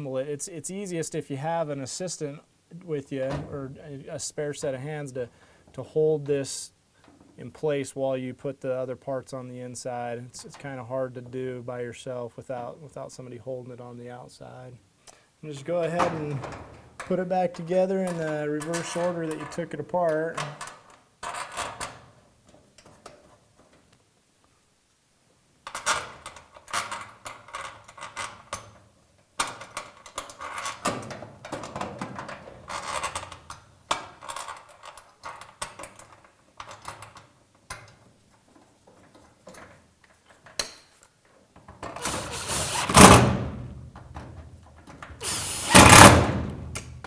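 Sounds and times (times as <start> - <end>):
cordless drill running: 42.1 - 43.1, 45.2 - 46.2.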